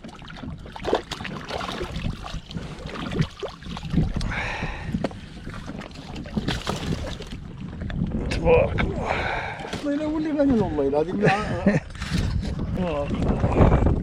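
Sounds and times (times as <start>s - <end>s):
sea water sloshing and splashing: 0.0s - 11.2s
wind on microphone: 0.0s - 14.0s.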